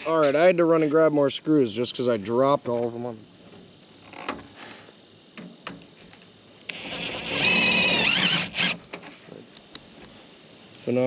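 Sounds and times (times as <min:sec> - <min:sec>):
power drill motor whining: 0:06.7 - 0:08.9.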